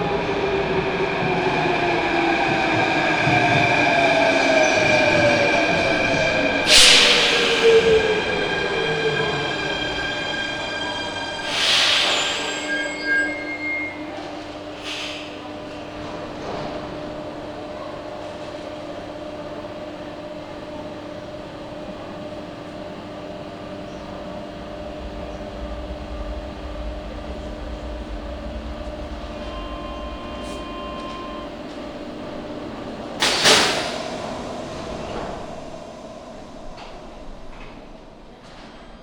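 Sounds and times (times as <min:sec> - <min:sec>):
train electrical hum: 0:03.9 - 0:38.8
short electronic tone: 0:10.8 - 0:14.3, 0:26.0 - 0:31.8
compressed air hiss: 0:11.5 - 0:12.5.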